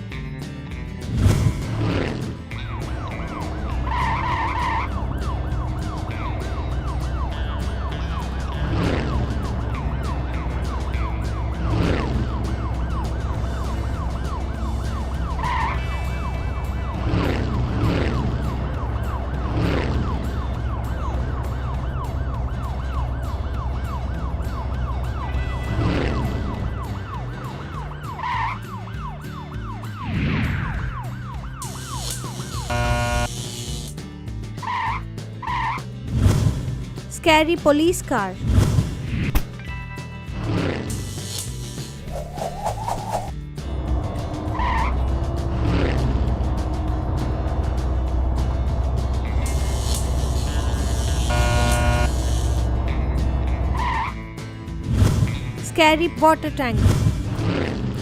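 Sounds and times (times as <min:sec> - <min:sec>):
cartoon siren wail: 0:02.8 - 0:08.3, 0:09.2 - 0:17.0, 0:18.0 - 0:33.3
long falling swoops: 0:42.0 - 0:43.3
low engine hum: 0:42.0 - 0:55.6.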